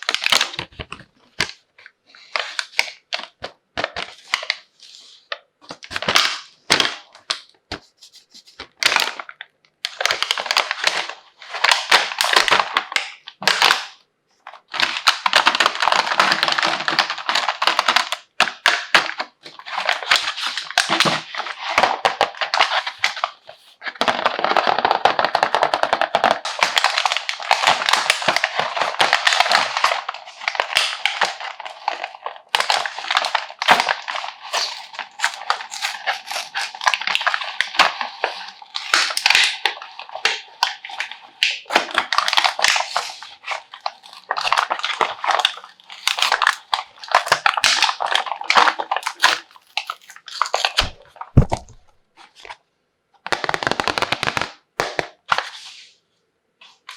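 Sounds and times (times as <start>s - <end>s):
plastic packaging crinkling: 0.0s - 52.6s, 53.2s - 55.6s.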